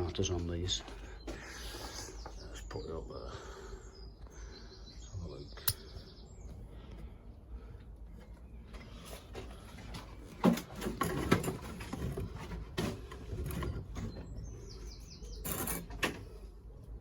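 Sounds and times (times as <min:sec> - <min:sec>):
bird chirping: 0:00.0 - 0:10.4, 0:13.4 - 0:16.8.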